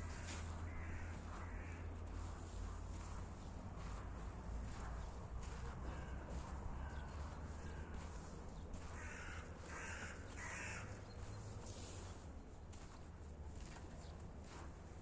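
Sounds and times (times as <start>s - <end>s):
crow cawing: 0.0s - 1.9s, 5.8s - 8.0s, 8.8s - 11.0s
footsteps: 0.0s - 15.0s.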